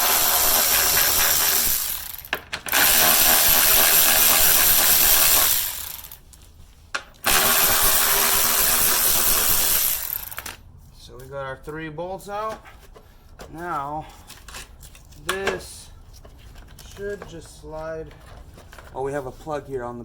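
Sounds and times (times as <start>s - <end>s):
handheld power tool running: 0.0s - 6.2s, 7.2s - 10.6s.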